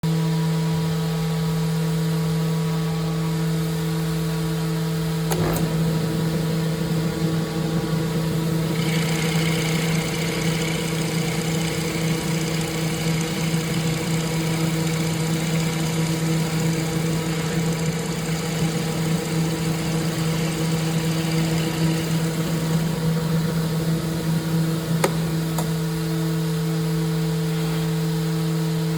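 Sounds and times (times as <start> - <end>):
higher whine: 2.3 - 28.9
drill press motor humming: 4.8 - 27.3.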